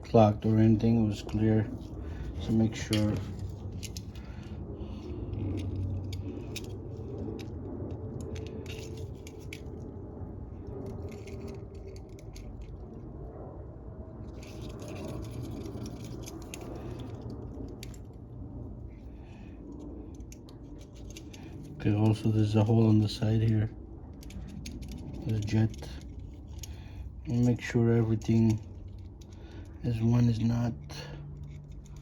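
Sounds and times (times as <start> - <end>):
steady low hum: 0.0 - 32.0
small metal parts clicking and tapping: 2.2 - 7.6, 8.2 - 9.8, 14.3 - 18.2, 19.7 - 32.0.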